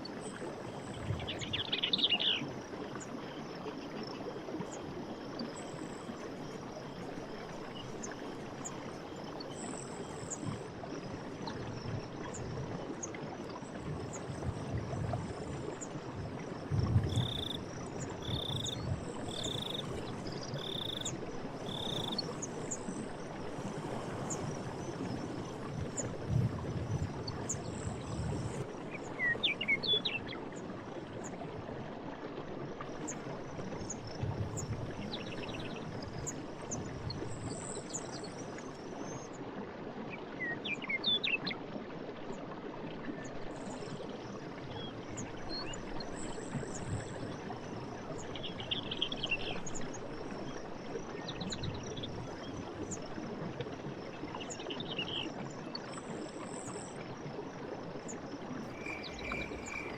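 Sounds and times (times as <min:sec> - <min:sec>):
insect trills: 0:16.5 - 0:26.0, 0:58.6 - 0:59.9.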